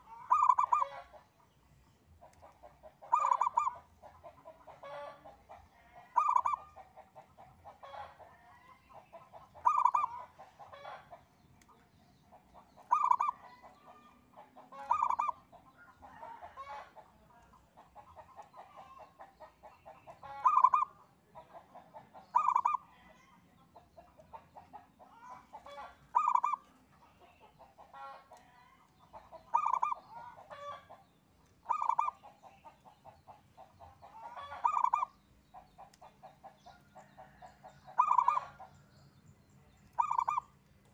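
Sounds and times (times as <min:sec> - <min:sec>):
dove cooing: 0:00.0 - 0:01.1, 0:03.0 - 0:03.8, 0:06.1 - 0:06.7, 0:09.6 - 0:10.2, 0:12.8 - 0:14.0, 0:14.8 - 0:15.4, 0:20.3 - 0:21.0, 0:22.3 - 0:23.0, 0:26.1 - 0:26.7, 0:29.5 - 0:30.7, 0:31.6 - 0:32.2, 0:34.1 - 0:35.1, 0:37.9 - 0:38.6, 0:39.9 - 0:40.5.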